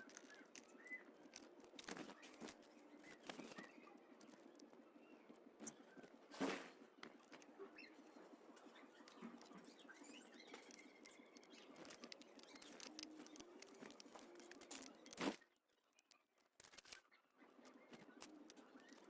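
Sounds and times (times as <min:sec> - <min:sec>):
birds pecking clicks: 0:00.0 - 0:04.8, 0:08.8 - 0:19.0
small birds chirping: 0:00.0 - 0:19.0.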